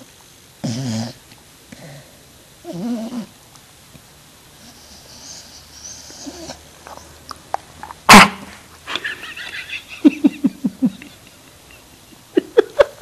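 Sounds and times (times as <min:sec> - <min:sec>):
dog whimpering: 0:05.0 - 0:06.6.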